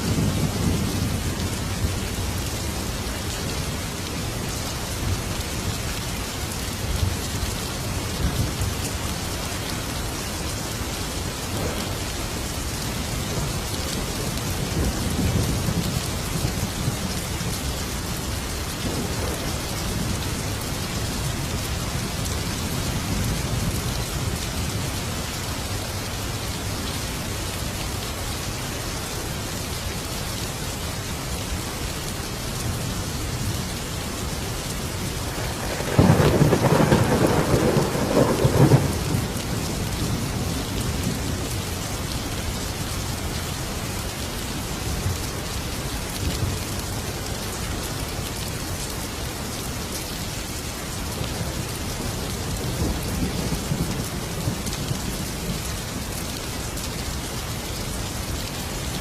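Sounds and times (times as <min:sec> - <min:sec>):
heavy rain: 0:00.0 - 0:59.0
thunderclap rumbling: 0:11.5 - 0:12.5, 0:18.8 - 0:20.2, 0:35.3 - 0:41.4.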